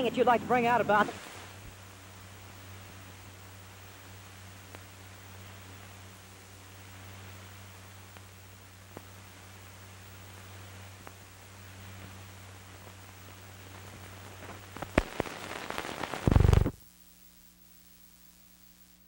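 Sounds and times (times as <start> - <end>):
mains hum: 0.0 - 19.0
tape hiss: 0.0 - 19.0
crackling and sharp pops: 4.6 - 5.0, 8.1 - 9.2, 11.0 - 11.3, 12.8 - 16.8.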